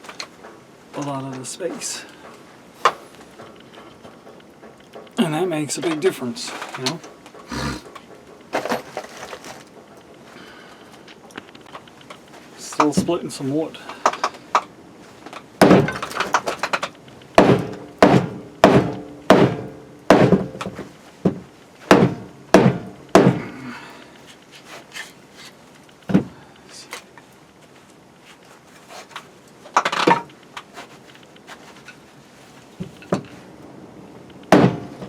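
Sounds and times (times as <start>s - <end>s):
axe chopping wood: 15.6s - 16.2s, 17.4s - 23.5s, 34.5s - 34.9s.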